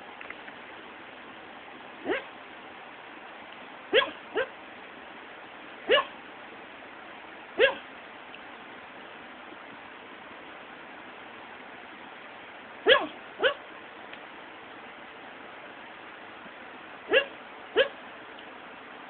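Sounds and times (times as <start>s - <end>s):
sleeping dog whimpering: 2.0s - 2.3s.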